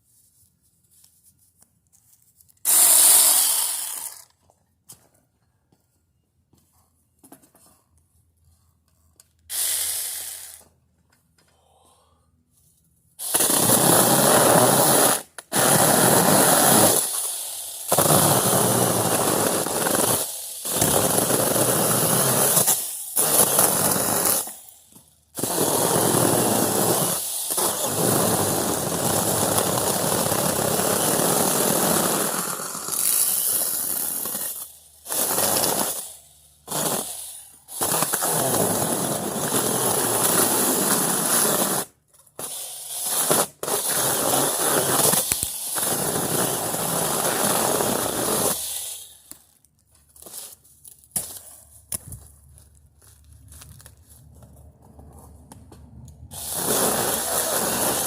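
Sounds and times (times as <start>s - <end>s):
palm stalks being cut rasping: 25.4s - 36.0s, 56.3s - 58.0s.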